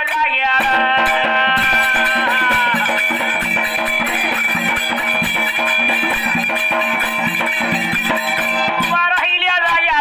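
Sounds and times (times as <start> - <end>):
person singing: 0.0 - 4.4
fast percussion beat: 0.0 - 10.0.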